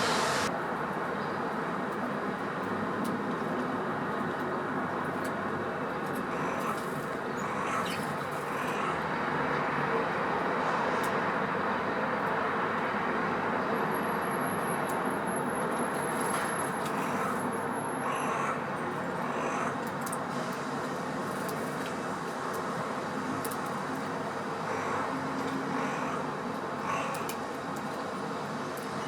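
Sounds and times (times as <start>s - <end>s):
thin high whine: 0.0s - 0.5s
traffic rumble: 0.0s - 29.0s.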